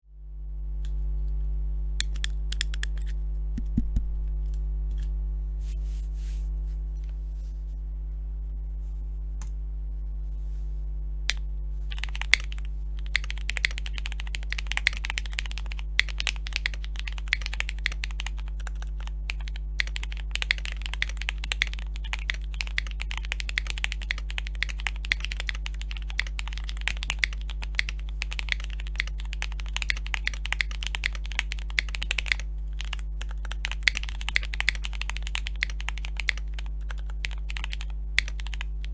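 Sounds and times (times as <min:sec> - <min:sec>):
steady low hum: 0:00.1 - 0:38.9
mechanical keyboard typing: 0:02.0 - 0:03.1, 0:11.9 - 0:38.9.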